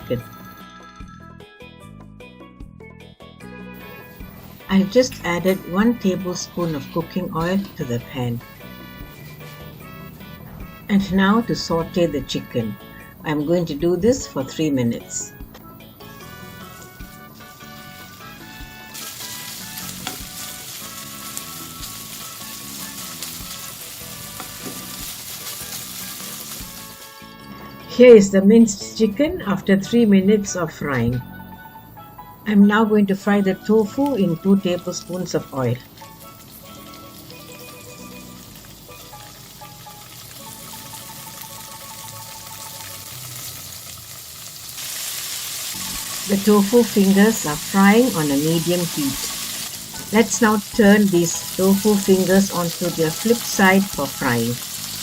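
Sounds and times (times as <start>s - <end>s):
gentle background music: 0.0s - 55.0s
chicken sizzling in oil: 3.8s - 10.8s, 16.0s - 27.7s, 33.8s - 55.0s.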